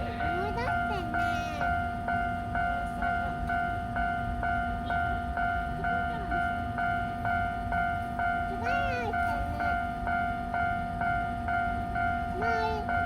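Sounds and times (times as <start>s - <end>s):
level crossing warning bell: 0.0s - 13.0s.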